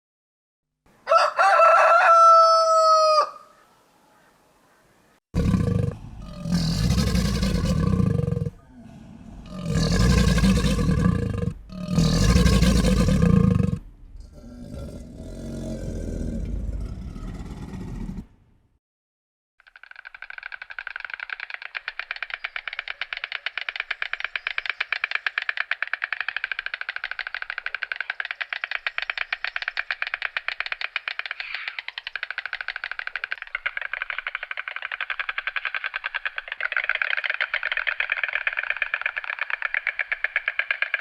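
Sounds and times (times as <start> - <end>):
rooster crowing: 1.0 - 3.6
large animal roaring: 5.4 - 18.4.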